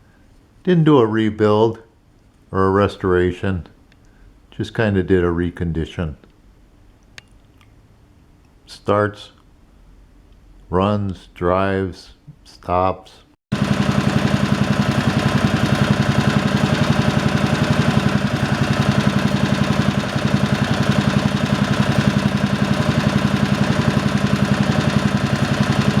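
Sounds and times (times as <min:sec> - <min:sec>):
mini bike engine idling: 0:13.5 - 0:26.0.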